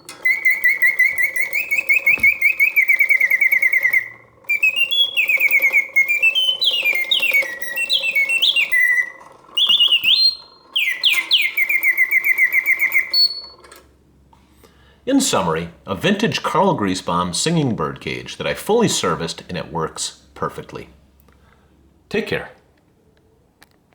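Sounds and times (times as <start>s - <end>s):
mechanical bird whistle trills: 0.0s - 13.7s.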